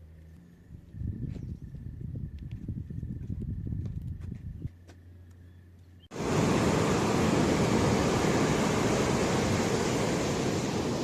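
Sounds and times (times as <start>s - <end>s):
wind: 0.0s - 11.0s
sea waves: 6.1s - 11.0s.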